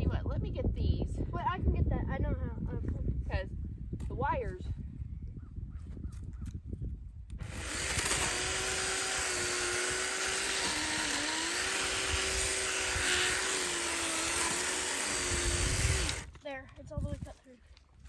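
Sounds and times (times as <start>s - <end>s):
electric chainsaw cutting wood: 7.4s - 16.4s.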